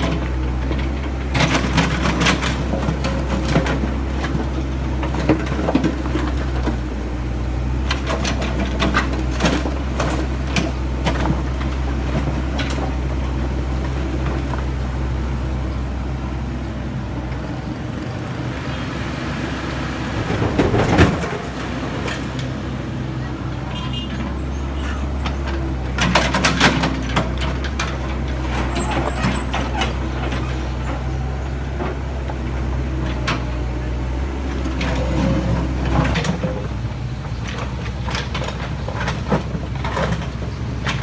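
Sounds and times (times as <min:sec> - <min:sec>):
diesel engine running: 0:00.0 - 0:41.0.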